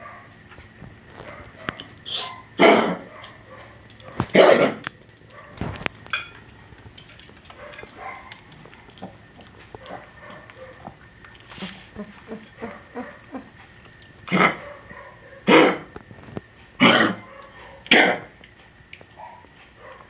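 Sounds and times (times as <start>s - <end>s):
dog coughing: 2.1s - 3.2s, 4.3s - 4.8s, 14.3s - 14.8s, 15.4s - 15.9s, 16.8s - 18.3s.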